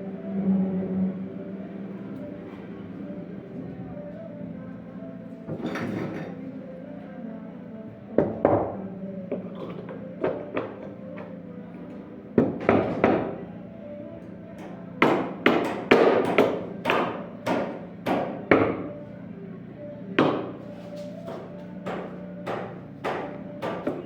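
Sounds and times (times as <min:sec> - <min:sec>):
hammer striking: 0:14.6 - 0:18.8, 0:21.3 - 0:24.0.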